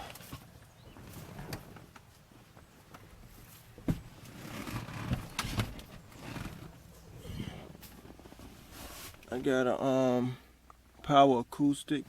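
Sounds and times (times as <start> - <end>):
clicks and knocks of car work: 3.8 - 6.7.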